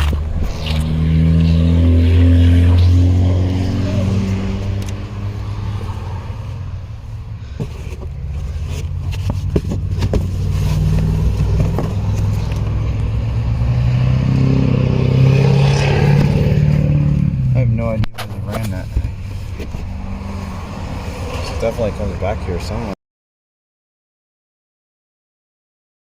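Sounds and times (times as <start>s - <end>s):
vehicle engine running: 0.0s - 13.7s.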